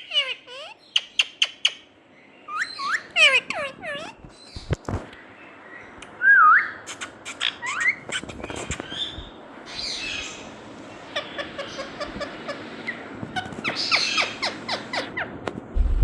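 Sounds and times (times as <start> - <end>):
parrot chattering: 0.0 - 1.8, 2.5 - 4.2, 6.9 - 9.1, 9.9 - 15.3
parrot squawk: 0.0 - 1.8, 2.5 - 4.2, 11.0 - 15.3.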